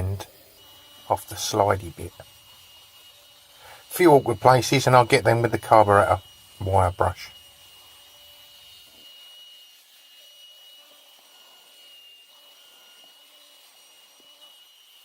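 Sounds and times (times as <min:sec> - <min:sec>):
wire brush whining: 0:00.0 - 0:09.0.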